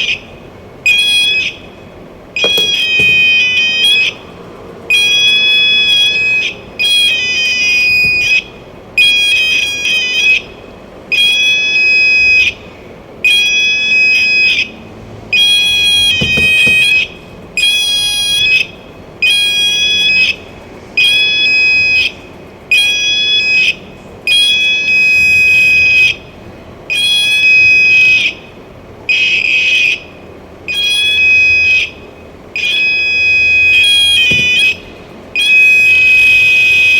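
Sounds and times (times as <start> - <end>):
metal detector beeping: 2.4 - 4.1, 7.0 - 8.4, 16.0 - 17.0, 33.8 - 34.8.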